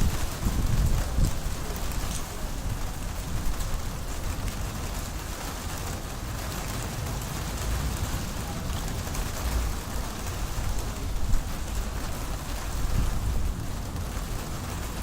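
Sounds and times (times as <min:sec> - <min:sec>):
low thunder rumble: 0:00.0 - 0:04.5
heavy rain falling: 0:00.0 - 0:15.0.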